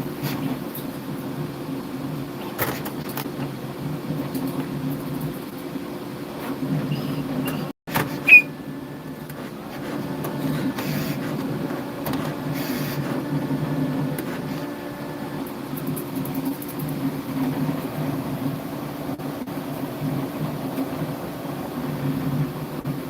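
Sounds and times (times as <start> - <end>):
three d printer motor hum: 7.4 - 23.0
short high chirp: 8.2 - 8.5.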